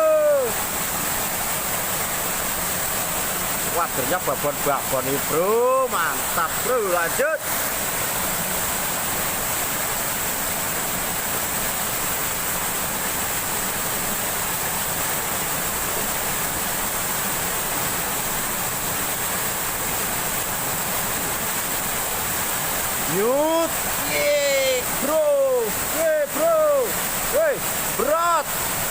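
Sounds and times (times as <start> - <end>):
stream water rushing: 0.0 - 28.9.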